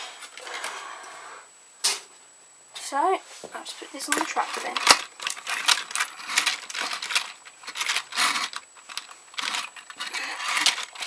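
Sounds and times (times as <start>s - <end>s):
toy train parts clicking and rattling: 4.0s - 11.0s.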